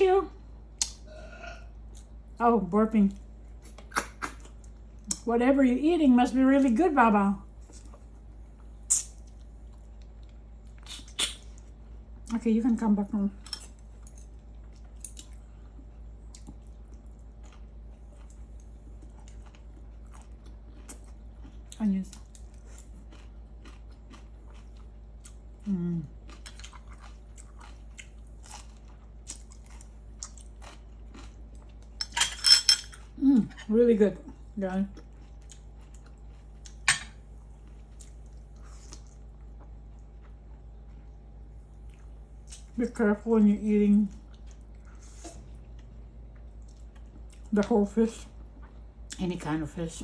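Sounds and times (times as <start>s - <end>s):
wet chewing: 8.9s - 12.0s, 13.5s - 32.1s, 34.9s - 42.8s, 44.1s - 49.2s
tableware clink: 32.0s - 33.0s.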